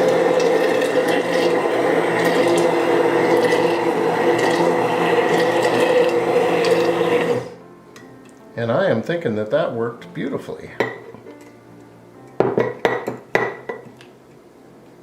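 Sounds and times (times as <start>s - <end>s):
immersion blender whirring: 0.0s - 7.6s.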